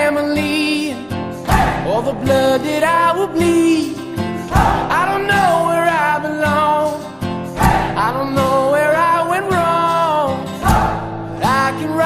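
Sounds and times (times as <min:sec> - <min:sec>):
strummed acoustic guitar: 0:00.0 - 0:12.0
sharp beat hits: 0:01.5 - 0:01.9, 0:04.5 - 0:05.0, 0:07.6 - 0:08.0, 0:10.6 - 0:11.2.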